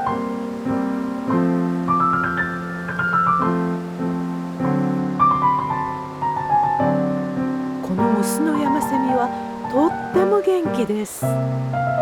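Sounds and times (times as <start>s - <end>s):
piano music: 0.0s - 12.0s.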